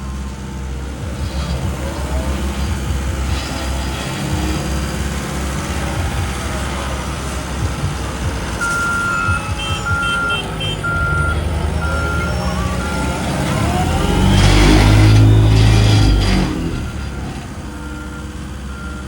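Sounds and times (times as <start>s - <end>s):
heavy machinery engines running: 0.0s - 19.0s
higher faint alarm beeping: 7.6s - 19.0s
backup alarm long beeps: 8.6s - 17.2s.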